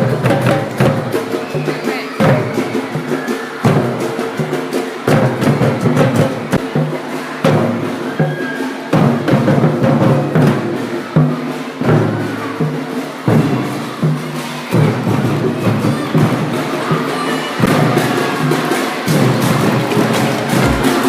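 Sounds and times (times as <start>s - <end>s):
music with drums: 0.0s - 21.0s
drum hits: 19.0s - 21.0s.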